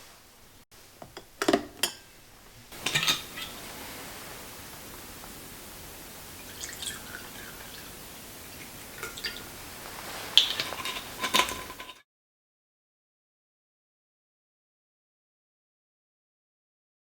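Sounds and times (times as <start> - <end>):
steady hiss: 0.0 - 12.0
kitchen taps and drips: 1.0 - 3.8, 4.6 - 12.0.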